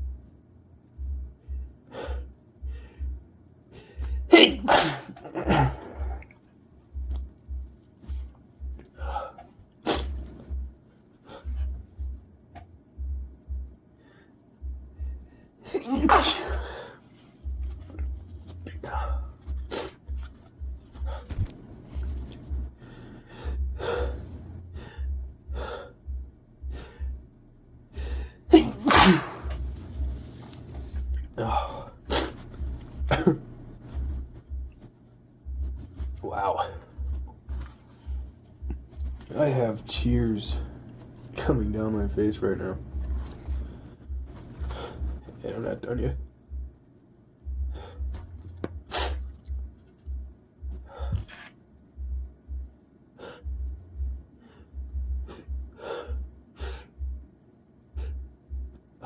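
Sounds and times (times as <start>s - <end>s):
man sneezing: 4.3s - 6.2s, 15.6s - 16.8s, 28.5s - 29.6s, 48.9s - 49.3s.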